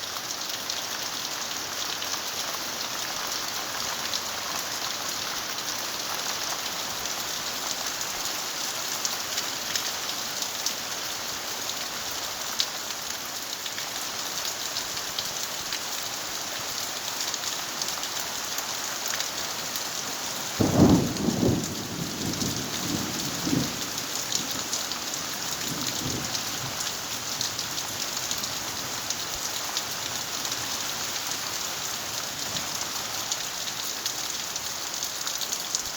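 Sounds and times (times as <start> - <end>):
rain falling: 0.0 - 35.9
thunder rumble: 20.6 - 23.8.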